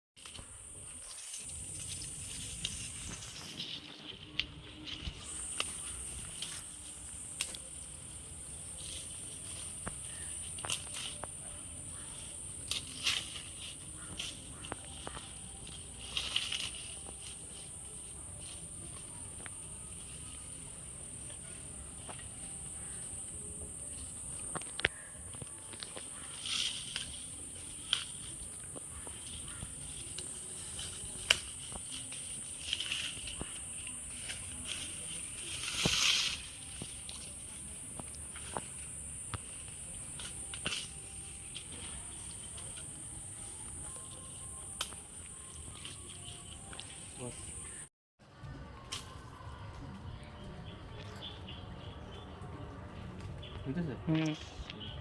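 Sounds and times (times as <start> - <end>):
high-pitched insect chorus: 0.2 - 47.9.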